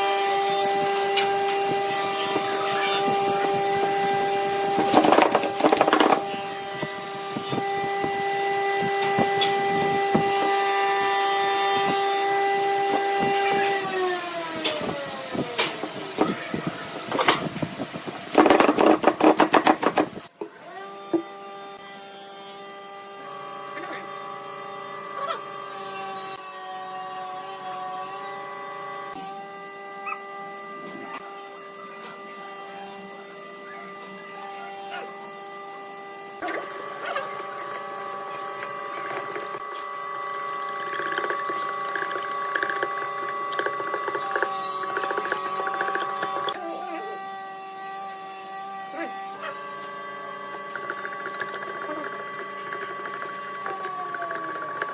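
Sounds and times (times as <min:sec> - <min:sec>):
lathe motor humming: 0:28.4 - 0:54.9.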